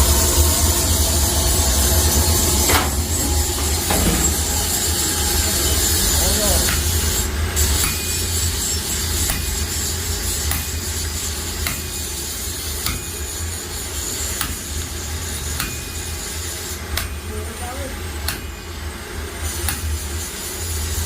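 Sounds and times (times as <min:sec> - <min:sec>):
steady low rumble: 0:00.0 - 0:10.0
hammer striking metal on anvil: 0:02.4 - 0:18.9, 0:19.5 - 0:20.0.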